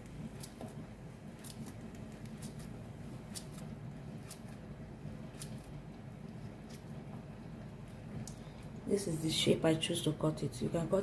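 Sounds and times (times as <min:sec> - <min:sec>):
knife slicing plantain: 0:01.4 - 0:04.6.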